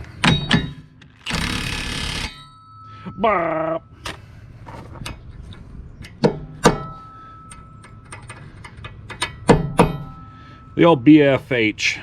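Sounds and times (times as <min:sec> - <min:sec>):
hammer striking metal: 0:00.2 - 0:00.9, 0:06.1 - 0:08.4, 0:09.0 - 0:10.9.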